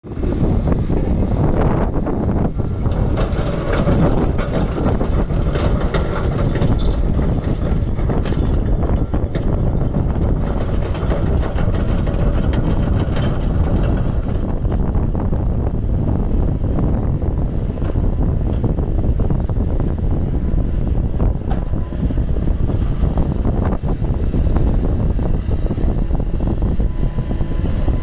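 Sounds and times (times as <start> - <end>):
excavator diesel engine running: 0.1 - 28.0
sharp metal clanks and rattles: 2.8 - 14.5.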